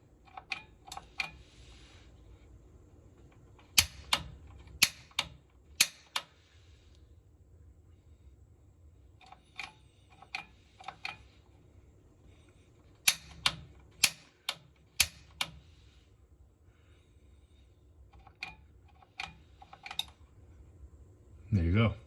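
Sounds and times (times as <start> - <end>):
pilot igniter clicking: 3.3 - 6.4, 13.0 - 15.6.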